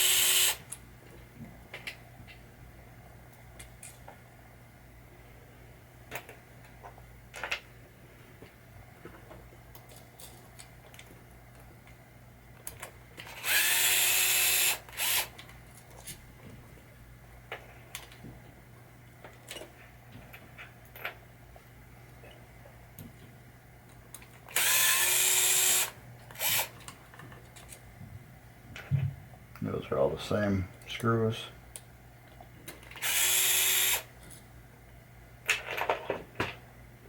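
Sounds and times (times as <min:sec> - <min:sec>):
power drill motor whirring: 0:00.0 - 0:00.7, 0:13.2 - 0:15.3, 0:24.5 - 0:26.8, 0:33.0 - 0:34.1.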